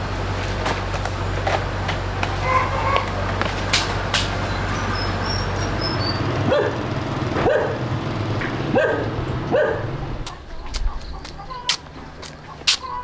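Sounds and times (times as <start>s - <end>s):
dog barking: 2.3s - 3.3s, 6.4s - 6.8s, 7.4s - 7.8s, 8.7s - 11.8s.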